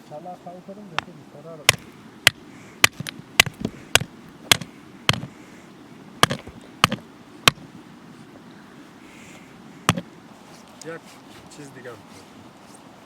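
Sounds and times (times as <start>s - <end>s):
tool striking something hard: 1.7s - 5.3s, 6.2s - 7.6s, 9.9s - 10.1s.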